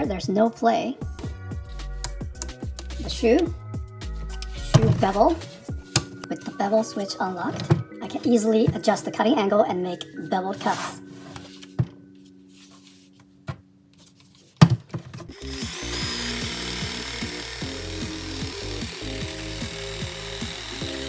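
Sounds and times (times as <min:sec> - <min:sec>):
jigsaw cutting wood: 0:15.3 - 0:21.0.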